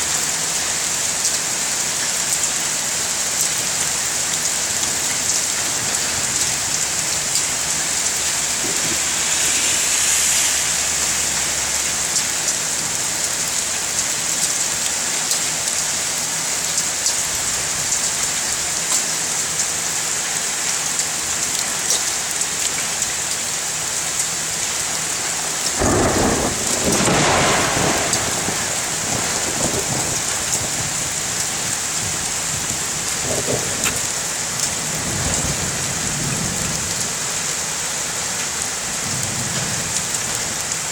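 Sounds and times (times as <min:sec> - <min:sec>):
heavy rain: 0:00.0 - 0:40.9
faint thunder rumble: 0:03.6 - 0:14.3, 0:25.1 - 0:37.3
thunder clap rolling: 0:03.9 - 0:14.0, 0:25.1 - 0:37.0.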